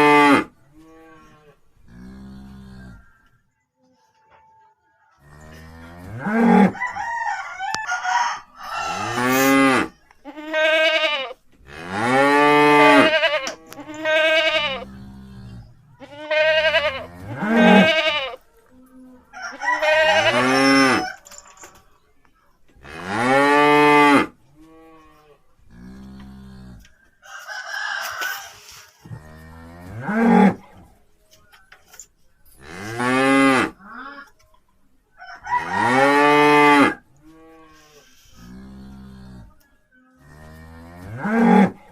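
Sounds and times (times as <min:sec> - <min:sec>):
cattle mooing: 0:00.0 - 0:03.2, 0:08.8 - 0:18.4, 0:19.7 - 0:21.2, 0:22.8 - 0:26.9, 0:29.1 - 0:30.6, 0:35.6 - 0:39.6, 0:40.2 - 0:41.9.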